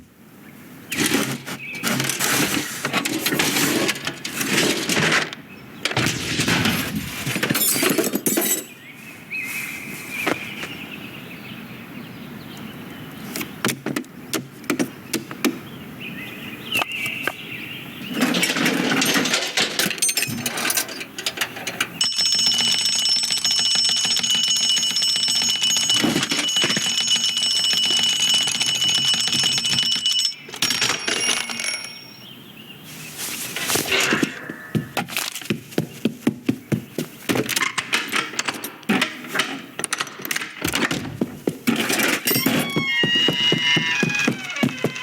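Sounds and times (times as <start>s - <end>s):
rustling noise: 0.9s - 5.4s, 6.0s - 7.7s, 9.0s - 10.8s, 32.8s - 37.7s, 40.6s - 45.0s
scattered clicks: 21.2s - 32.0s
alarm clock bell ringing: 22.0s - 32.3s.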